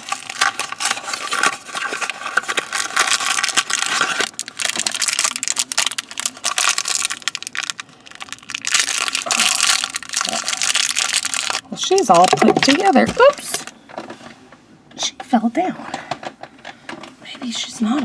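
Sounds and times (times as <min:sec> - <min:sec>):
plastic packaging crinkling: 0:00.0 - 0:14.2.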